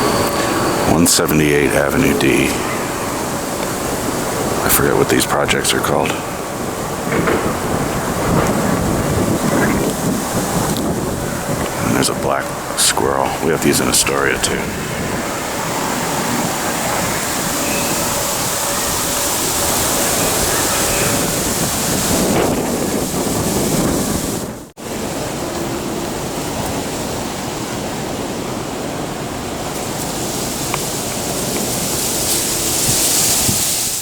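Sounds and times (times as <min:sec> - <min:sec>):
wind on microphone: 0:00.0 - 0:28.5
rushing street noise: 0:00.0 - 0:34.0.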